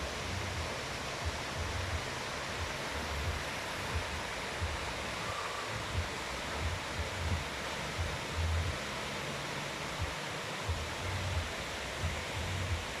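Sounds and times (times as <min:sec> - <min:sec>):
low rumbles: 0:00.0 - 0:08.9
river water rushing: 0:00.0 - 0:13.0.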